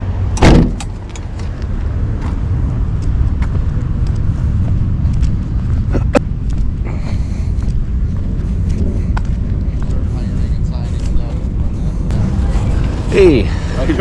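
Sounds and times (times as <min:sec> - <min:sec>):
vehicle engine rumbling: 0:00.0 - 0:14.0
loud thump: 0:00.4 - 0:00.9.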